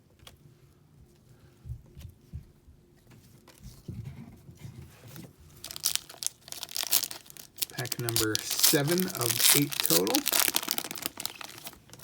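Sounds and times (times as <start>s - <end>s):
pack wrapper crinkling and tearing: 5.6s - 12.0s.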